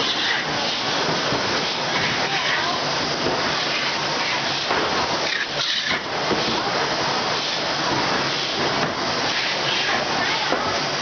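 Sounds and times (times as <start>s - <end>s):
filling machine hissing: 0.0s - 11.0s.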